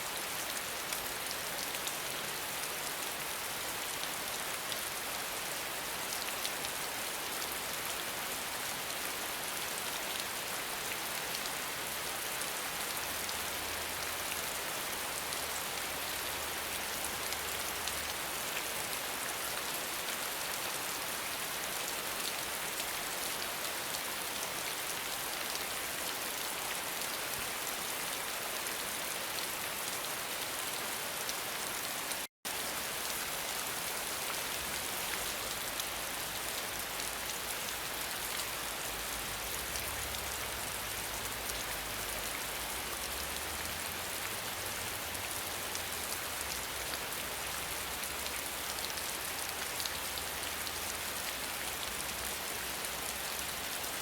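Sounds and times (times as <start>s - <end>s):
steady rain falling: 0.0s - 54.0s.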